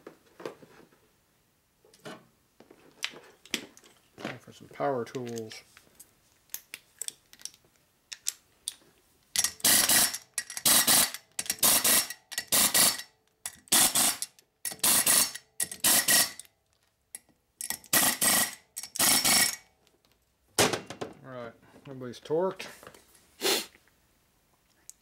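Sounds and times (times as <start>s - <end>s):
power wrench bursts: 9.5s - 16.4s, 17.8s - 19.6s.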